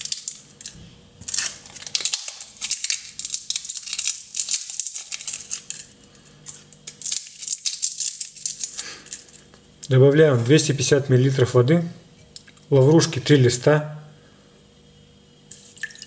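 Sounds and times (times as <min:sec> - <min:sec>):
dry leaves being crushed: 0:00.0 - 0:09.4.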